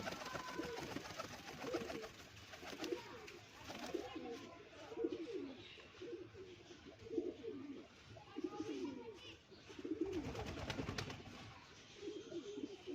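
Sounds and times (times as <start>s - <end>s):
pigeons cooing: 0.0s - 3.2s, 5.0s - 8.0s.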